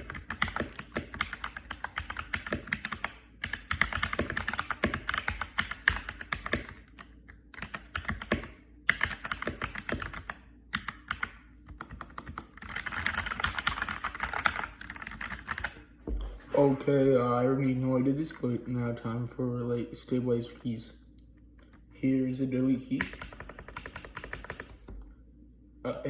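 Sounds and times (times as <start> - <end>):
mechanical keyboard typing: 0.0 - 15.8, 23.0 - 24.9.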